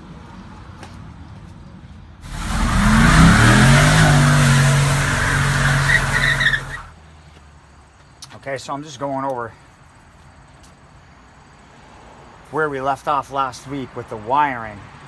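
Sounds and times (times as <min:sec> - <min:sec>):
car engine revving high: 0:02.2 - 0:06.9
heavy rushing noise: 0:02.2 - 0:06.9.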